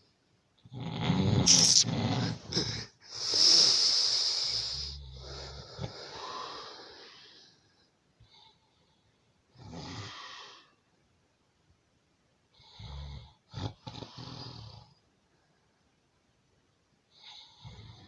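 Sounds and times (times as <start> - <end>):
long breathy hiss: 1.5 - 1.9, 3.1 - 7.6.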